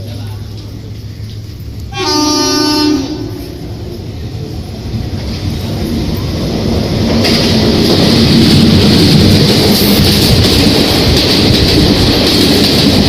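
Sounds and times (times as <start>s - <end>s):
approaching train rumble: 0.0s - 13.0s
wheels hissing on rails: 0.0s - 13.0s
electric locomotive horn honk: 1.9s - 3.6s.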